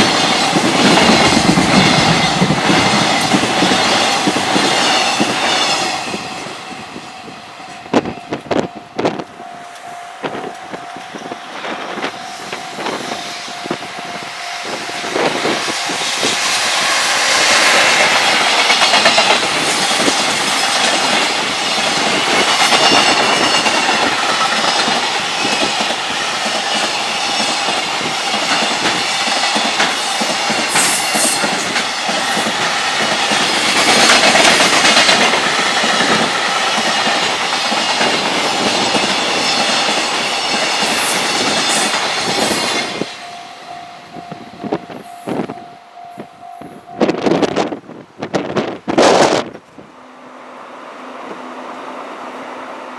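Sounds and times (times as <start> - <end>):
wheels clattering over rail joints: 0.0 - 7.0, 7.6 - 43.2
freight train passing: 0.0 - 52.9.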